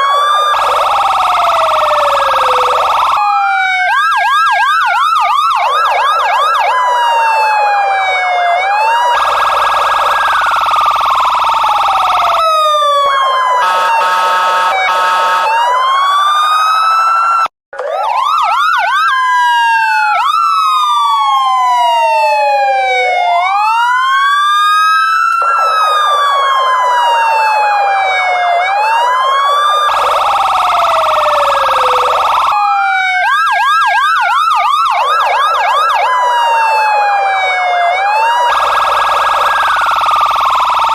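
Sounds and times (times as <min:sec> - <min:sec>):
police car sirens wailing and yelping: 0:00.0 - 0:40.9.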